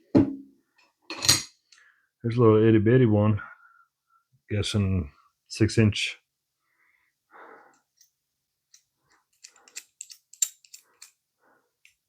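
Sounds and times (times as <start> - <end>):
metal wrench handling noises: 8.7 - 11.2.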